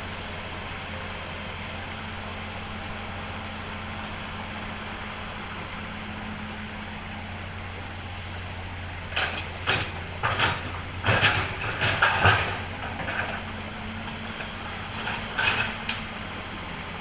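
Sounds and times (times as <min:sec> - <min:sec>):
excavator diesel engine running: 0:00.0 - 0:17.0
rock clattering into steel truck bed: 0:09.1 - 0:16.1.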